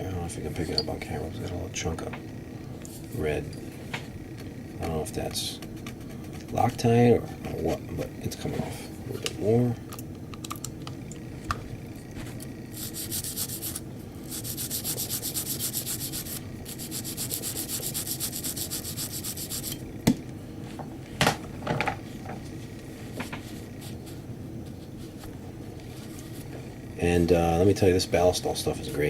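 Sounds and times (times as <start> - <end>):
brush scrubbing metal: 12.7 - 19.8.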